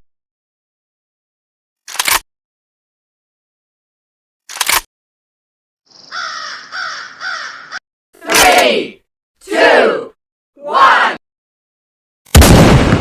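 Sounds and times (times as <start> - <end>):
crow cawing: 5.9 - 7.8.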